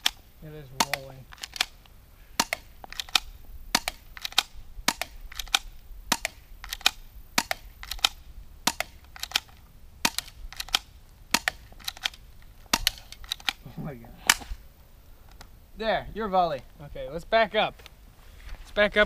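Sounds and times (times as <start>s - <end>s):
airsoft pistol shots: 0.0s - 13.6s.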